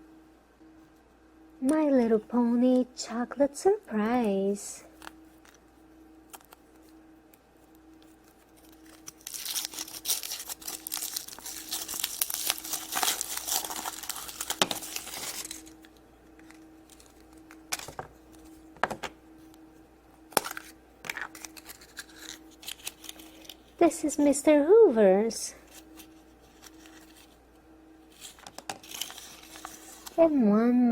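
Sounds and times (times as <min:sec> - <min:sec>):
foil wrapper tearing and crinkling: 0:08.4 - 0:17.9, 0:20.4 - 0:23.7, 0:28.1 - 0:30.2.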